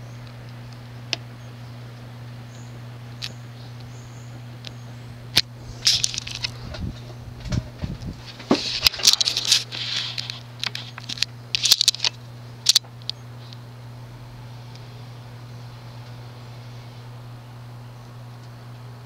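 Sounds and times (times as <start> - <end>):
ceiling fan motor humming: 0.0 - 19.0
clicks scrapes and rustles: 5.8 - 13.6.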